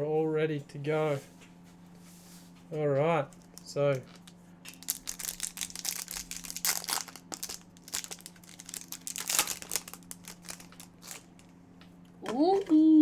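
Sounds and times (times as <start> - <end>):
foil wrapper tearing and crinkling: 3.3 - 11.5.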